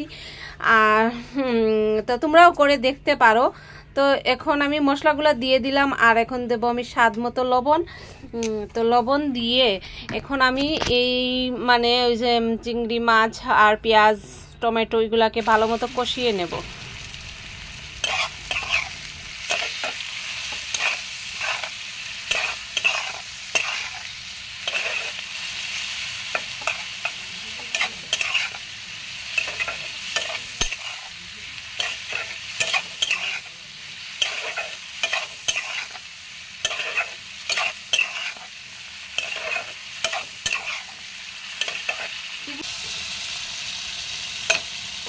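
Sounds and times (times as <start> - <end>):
oil sizzling: 15.4 - 45.0
spatula scraping a pan: 18.0 - 28.7, 29.3 - 31.2, 31.8 - 42.2.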